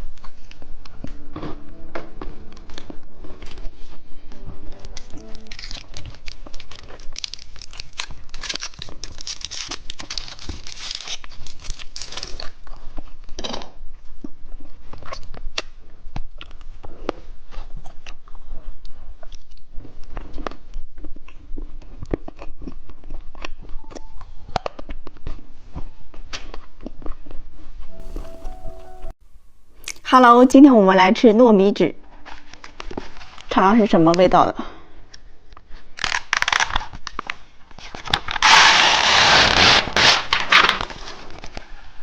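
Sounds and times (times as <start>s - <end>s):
plastic wrapper crinkling: 5.2s - 12.6s, 36.0s - 38.7s.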